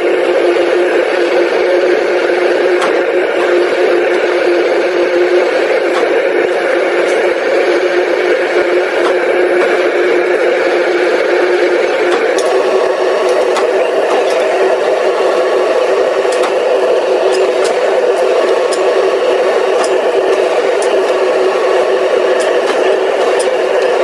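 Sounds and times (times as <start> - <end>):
industrial machinery humming: 0.0 - 24.0
sharp clicks and rattles: 11.8 - 24.0.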